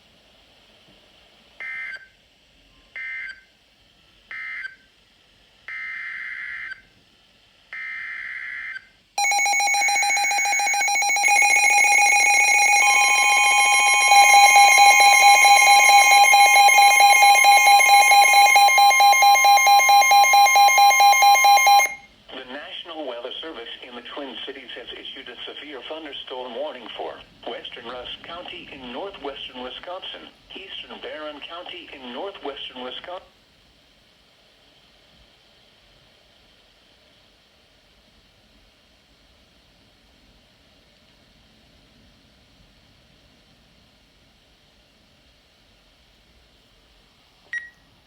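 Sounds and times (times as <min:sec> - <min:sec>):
digital data bursts: 0:09.2 - 0:22.0
multi-tone attention signal: 0:09.2 - 0:22.0.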